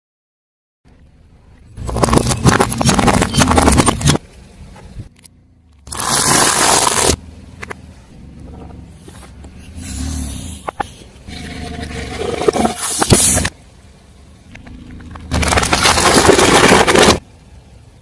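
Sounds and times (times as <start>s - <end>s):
low rumbling: 1.3s - 17.2s
car tyre crushing crunchy objects: 1.7s - 4.2s, 5.8s - 7.8s, 14.6s - 17.3s.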